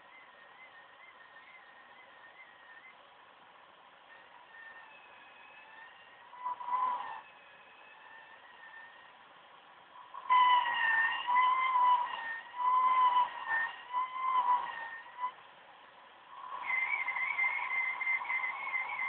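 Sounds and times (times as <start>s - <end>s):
power supply coil whine: 0.0s - 3.0s, 4.0s - 9.3s.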